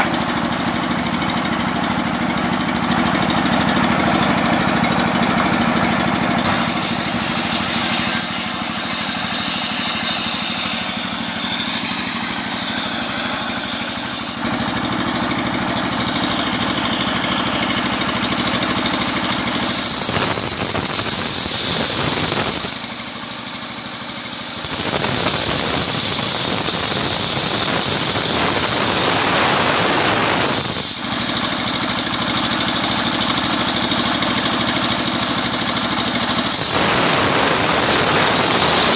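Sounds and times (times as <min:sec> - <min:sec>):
engine-driven sawmill sawing: 0:00.0 - 0:38.9
high hiss: 0:36.5 - 0:38.9.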